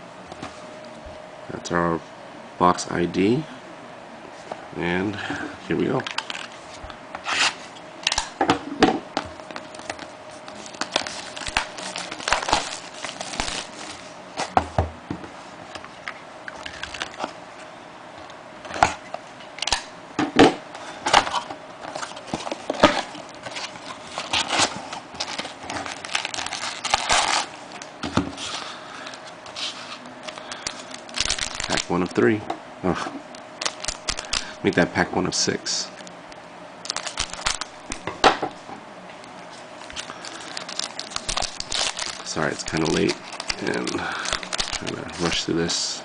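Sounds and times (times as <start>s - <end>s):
plastic wrap crinkling and ripping: 9.4s - 14.5s, 21.9s - 32.1s, 33.6s - 34.6s, 36.8s - 38.1s, 39.8s - 45.5s.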